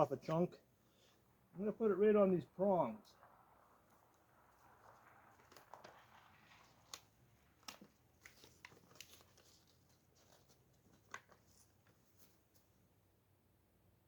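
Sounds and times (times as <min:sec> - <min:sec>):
soft clicks and crinkles: 0:03.1 - 0:12.8.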